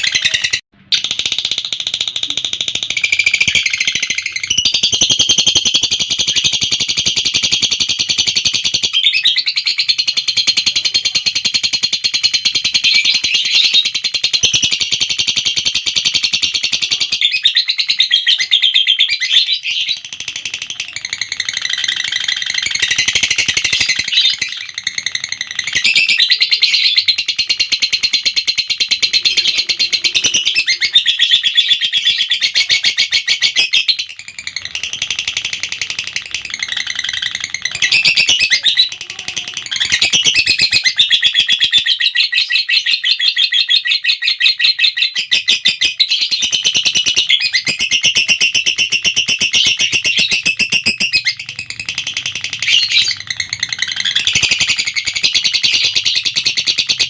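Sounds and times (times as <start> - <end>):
lovebird shrill trilling: 20.8 - 57.0.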